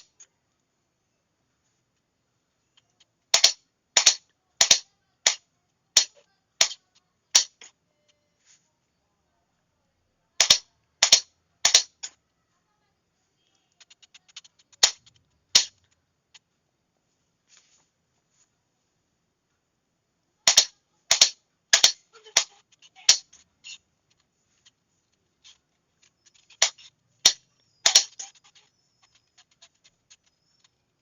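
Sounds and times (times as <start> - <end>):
faint rapid ticks: 13.4 - 16.7.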